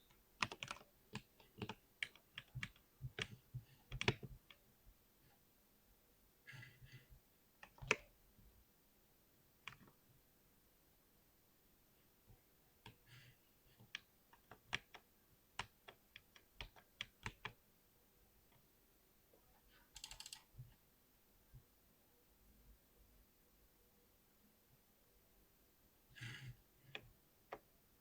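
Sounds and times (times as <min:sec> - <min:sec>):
typing on a computer keyboard: 0:00.1 - 0:04.6, 0:07.6 - 0:08.0, 0:13.9 - 0:17.6, 0:19.9 - 0:20.5.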